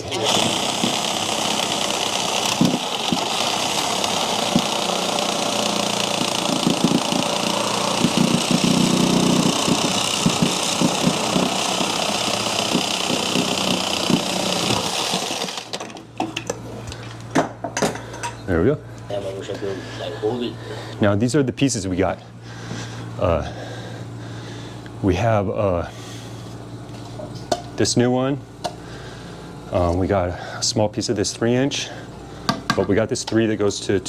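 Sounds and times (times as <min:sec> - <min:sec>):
power saw cutting pipe: 0:00.0 - 0:15.9.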